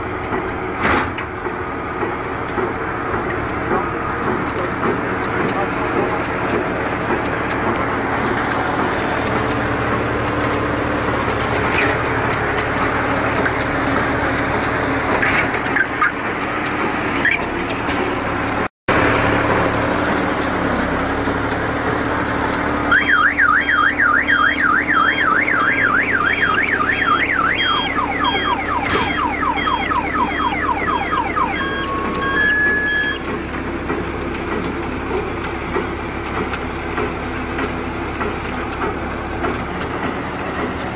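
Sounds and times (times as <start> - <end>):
round baler and tractor running: 0.0 - 40.9
electronic alarm warbling: 17.2 - 17.5, 22.9 - 33.3
lower electronic warble: 22.9 - 33.3.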